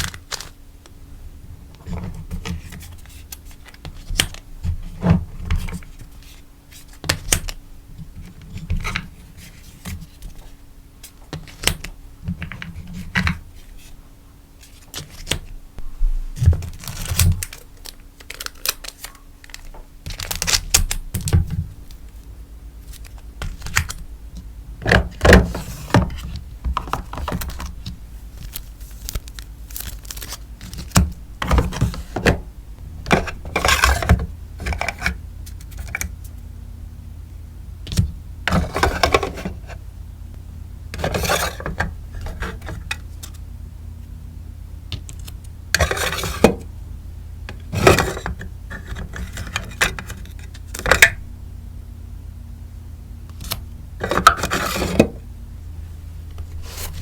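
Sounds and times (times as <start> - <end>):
plastic and paper rustling: 16.3 - 20.7, 24.9 - 36.1.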